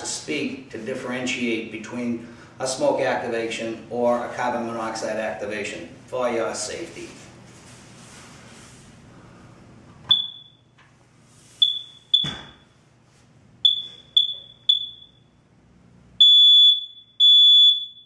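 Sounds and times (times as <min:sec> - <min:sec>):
alarm long beeps: 0:10.1 - 0:10.6, 0:11.6 - 0:12.8, 0:13.6 - 0:15.3, 0:16.2 - 0:18.0
detector high chirps: 0:11.6 - 0:12.6, 0:13.7 - 0:15.3.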